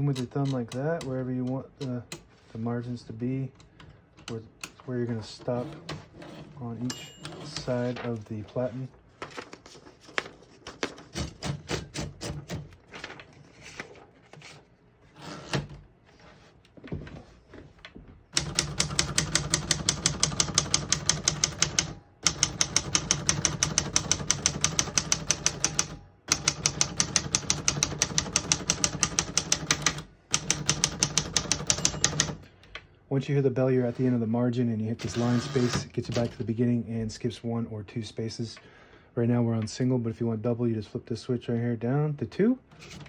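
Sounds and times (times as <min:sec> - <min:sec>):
typewriter keys typing: 0:18.4 - 0:32.4.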